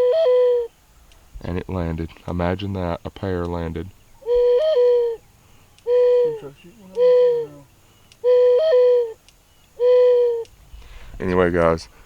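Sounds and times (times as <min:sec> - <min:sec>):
mourning dove cooing: 0:00.0 - 0:00.8, 0:04.0 - 0:10.8.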